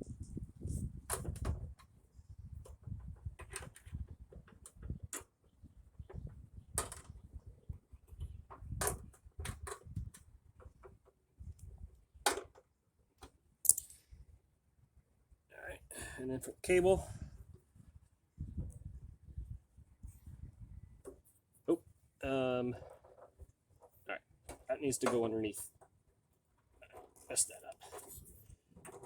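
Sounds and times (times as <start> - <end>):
parts clicking and knocking: 12.3 - 14.1.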